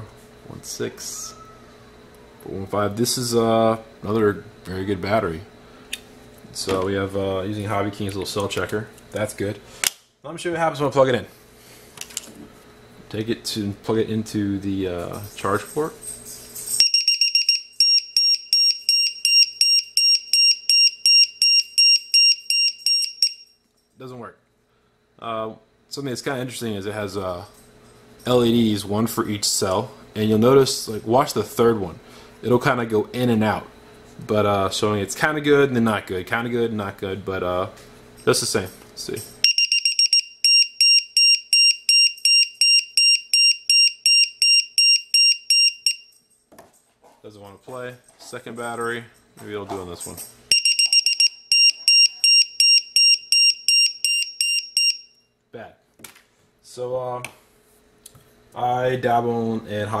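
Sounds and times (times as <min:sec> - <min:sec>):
alarm buzzer beeping: 0:16.8 - 0:23.6, 0:39.4 - 0:46.2, 0:50.5 - 0:55.3.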